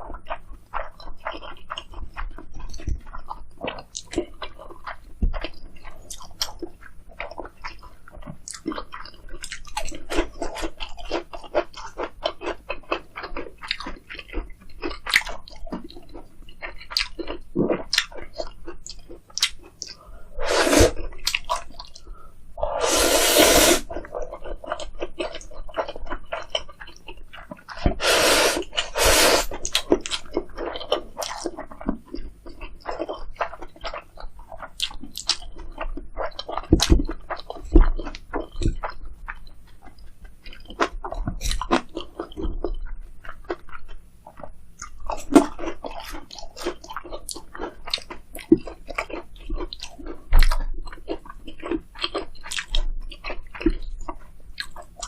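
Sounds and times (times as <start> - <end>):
chewing and crunching food: 0.0 - 55.0
wet mouth clicks: 22.8 - 24.1, 27.4 - 30.2.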